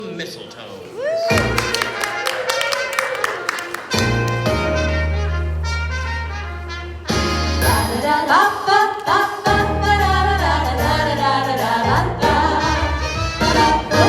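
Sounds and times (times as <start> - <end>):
bass and brass: 1.4 - 8.3, 9.5 - 14.0
voices singing harmonies: 7.6 - 14.0.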